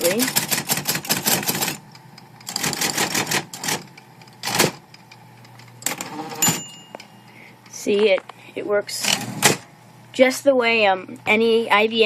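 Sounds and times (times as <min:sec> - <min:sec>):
typewriter key strikes: 0:00.0 - 0:01.8, 0:02.4 - 0:04.8
typewriter motor hum: 0:00.0 - 0:06.6, 0:09.0 - 0:09.7.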